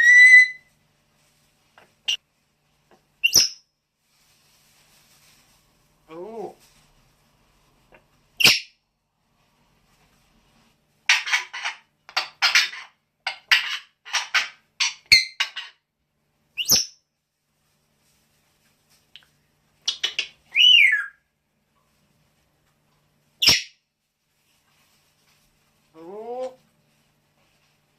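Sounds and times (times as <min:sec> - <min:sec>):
bird chirping and whistling: 0:00.0 - 0:00.7, 0:03.2 - 0:03.6, 0:16.6 - 0:16.9, 0:20.5 - 0:21.2.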